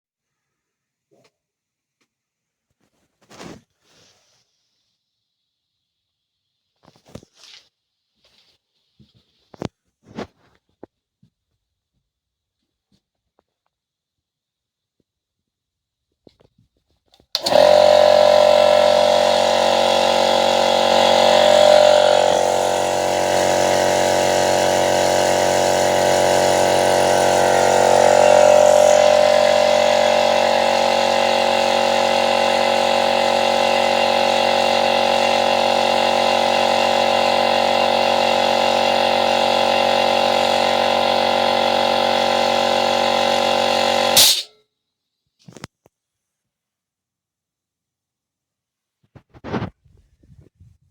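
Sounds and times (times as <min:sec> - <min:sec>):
air compressor running: 0:17.3 - 0:44.5
compressor stopping burst: 0:17.4 - 0:44.5.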